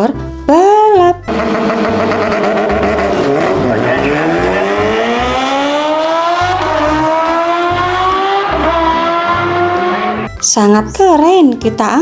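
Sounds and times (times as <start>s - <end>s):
motorcycle engine accelerating: 1.2s - 10.4s.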